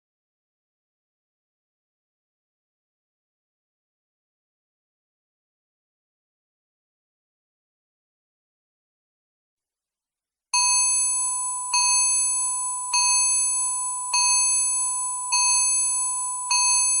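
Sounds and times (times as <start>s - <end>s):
electronic timer alarm chime: 10.6s - 17.0s.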